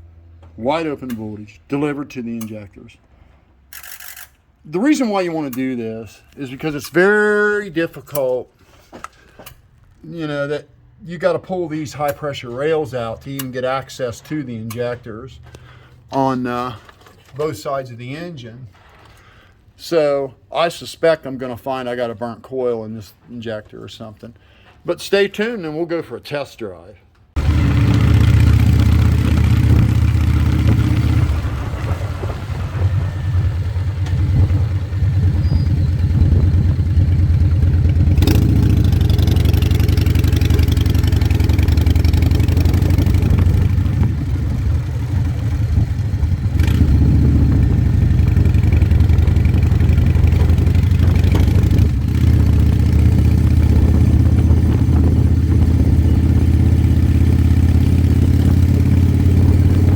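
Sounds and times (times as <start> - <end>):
vehicle engine running: 27.4 - 59.9.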